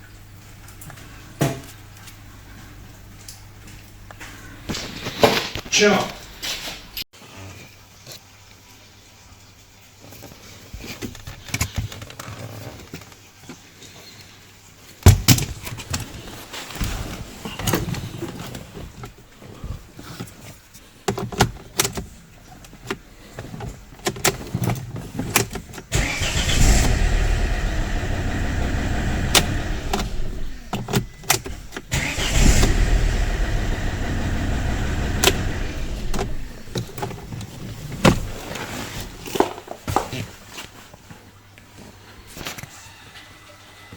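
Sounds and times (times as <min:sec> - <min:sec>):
car engine cranking and running: 0:24.0 - 0:38.6.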